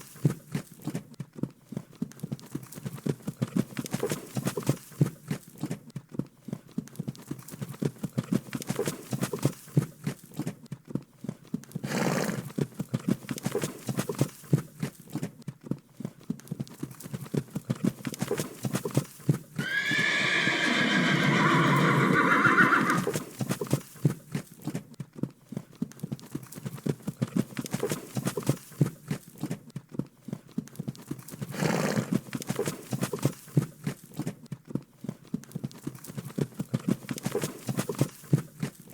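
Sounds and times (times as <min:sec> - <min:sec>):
horse hooves clopping: 0:00.0 - 0:38.9
horse neighing: 0:19.6 - 0:23.2.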